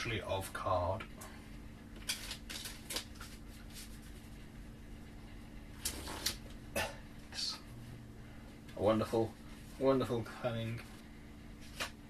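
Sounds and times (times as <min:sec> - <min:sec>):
faint steady hum: 0:00.0 - 0:12.0
plastic packaging rustling: 0:02.0 - 0:04.3.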